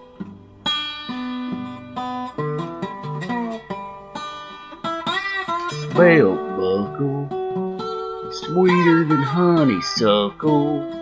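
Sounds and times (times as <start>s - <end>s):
acoustic guitar plucked notes: 0.0s - 11.0s.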